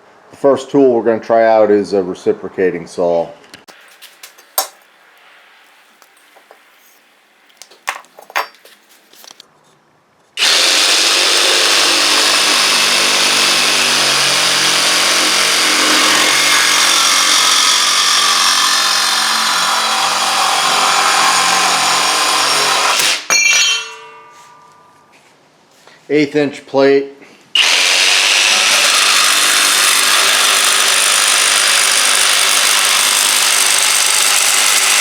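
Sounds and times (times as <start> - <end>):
reciprocating saw cutting metal: 10.4 - 23.3, 27.6 - 35.0.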